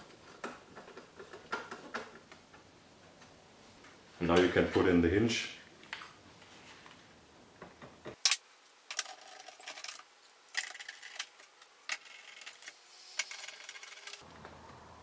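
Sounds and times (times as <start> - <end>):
metal parts clinking and clattering: 8.3 - 14.2.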